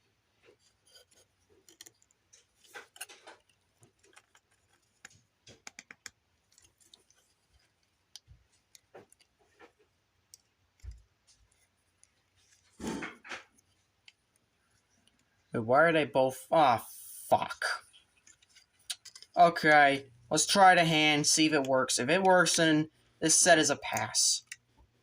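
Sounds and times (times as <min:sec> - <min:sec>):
plastic parts clicking: 0:00.9 - 0:15.3, 0:18.2 - 0:19.4.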